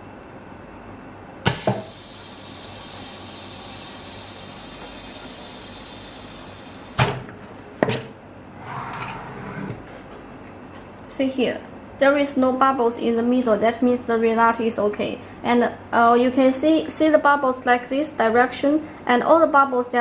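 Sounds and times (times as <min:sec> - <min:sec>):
air hissing: 0:01.7 - 0:07.0.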